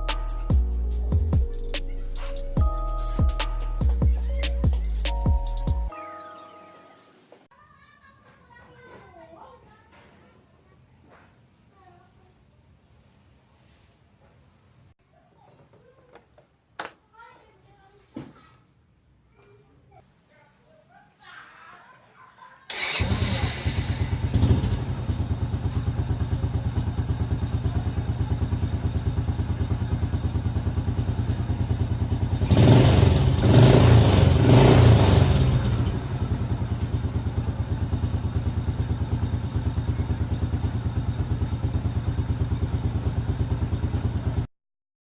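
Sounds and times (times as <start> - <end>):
motorcycle engine idling and revving: 0.0 - 5.9, 22.7 - 44.5.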